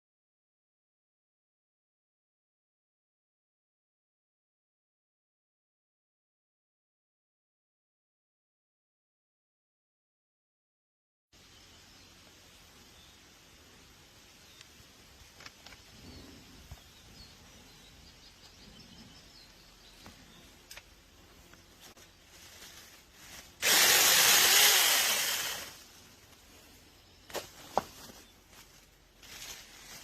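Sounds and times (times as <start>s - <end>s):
mini chainsaw running: 23.6s - 25.8s.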